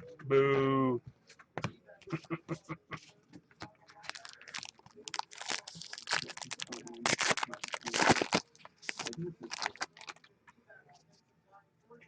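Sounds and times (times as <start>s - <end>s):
card pack wrappers tearing and crinkling: 4.0s - 10.2s.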